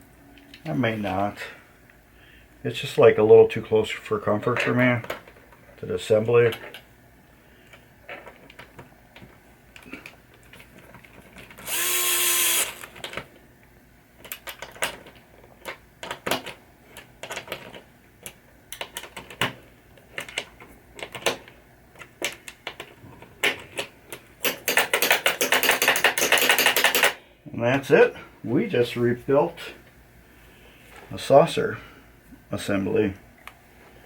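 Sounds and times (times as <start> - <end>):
power drill whirring: 11.6 - 12.9
tools clicking and tapping: 22.0 - 27.2.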